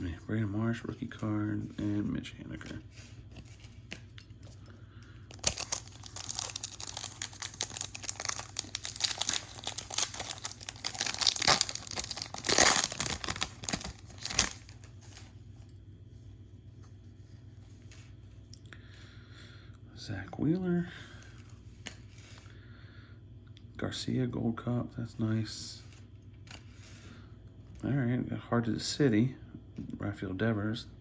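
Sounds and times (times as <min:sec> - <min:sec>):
foil wrapper tearing and crinkling: 0:05.3 - 0:15.2.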